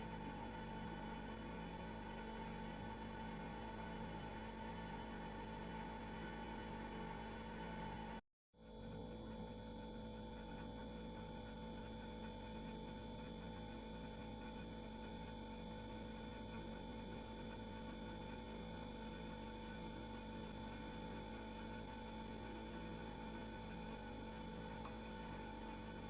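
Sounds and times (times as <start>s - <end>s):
refrigerator humming: 0.0s - 8.2s, 12.3s - 26.0s.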